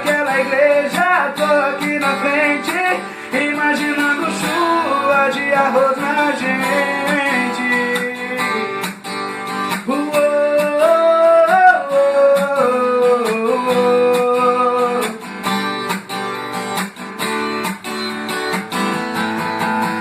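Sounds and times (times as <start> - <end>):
sliding lead melody: 0.0 - 9.7
strummed acoustic guitar: 0.0 - 20.0.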